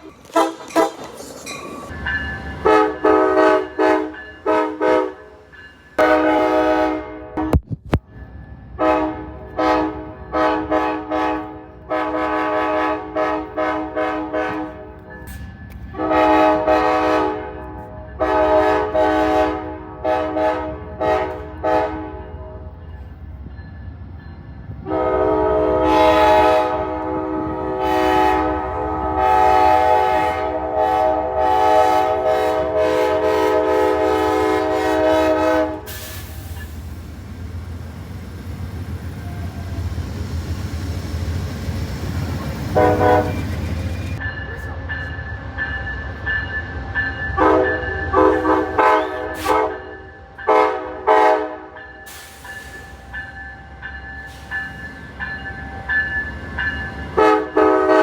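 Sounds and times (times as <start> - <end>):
low train rumble: 0.0 - 58.0
locomotive air horn blasts: 2.6 - 5.4, 6.0 - 7.6, 8.8 - 15.0, 16.0 - 22.8, 24.8 - 36.6, 42.1 - 44.2, 47.4 - 52.4, 57.2 - 58.0.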